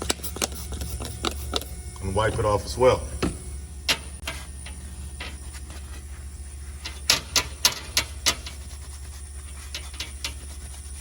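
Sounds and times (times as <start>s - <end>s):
steady low hum: 0.0s - 11.0s
cleaning strokes on metal: 5.4s - 11.0s.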